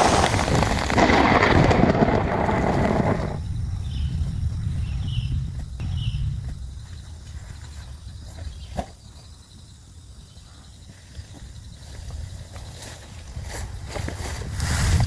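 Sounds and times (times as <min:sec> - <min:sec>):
wind buffeting microphone: 0:00.0 - 0:08.7, 0:13.2 - 0:15.0.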